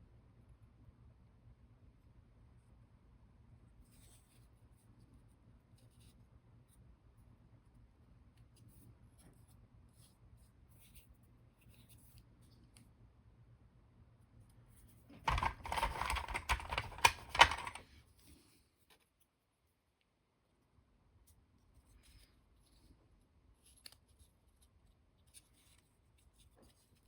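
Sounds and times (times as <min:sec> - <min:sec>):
model parts and tools handled: 0:14.8 - 0:19.2
loud clicking and scraping: 0:15.1 - 0:17.8.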